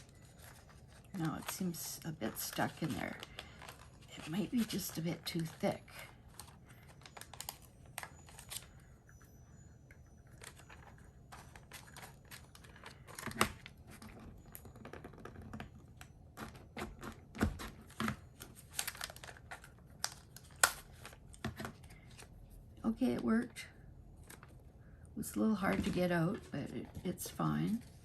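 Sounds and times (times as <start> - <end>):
paper rustling: 0.0 - 8.7.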